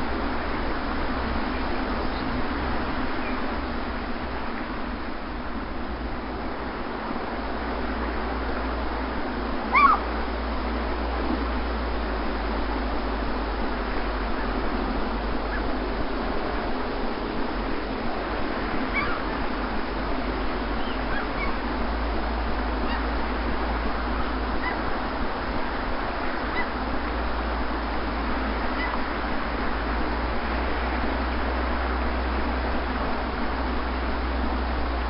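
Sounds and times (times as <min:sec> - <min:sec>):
sea surf washing on beach: 0:00.0 - 0:35.0
faint bird calls: 0:03.1 - 0:03.5, 0:09.7 - 0:10.1, 0:15.4 - 0:15.8, 0:18.8 - 0:19.4, 0:20.6 - 0:21.7, 0:22.6 - 0:23.3, 0:24.0 - 0:24.9, 0:26.3 - 0:27.2, 0:28.4 - 0:29.2.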